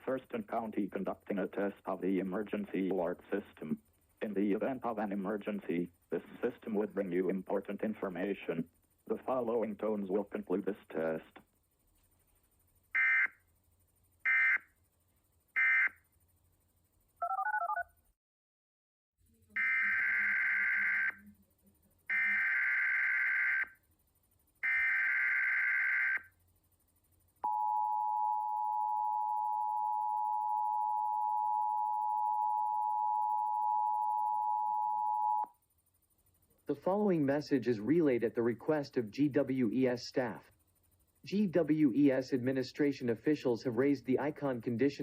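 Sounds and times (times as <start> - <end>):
digital data bursts: 14.2 - 14.6, 15.6 - 16.0, 19.6 - 21.2.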